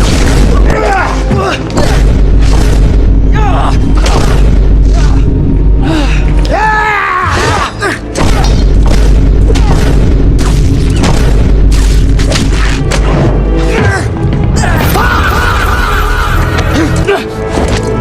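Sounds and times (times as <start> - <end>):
music: 0.0 - 18.0
comedy booms and hits: 1.8 - 3.4, 8.2 - 13.4.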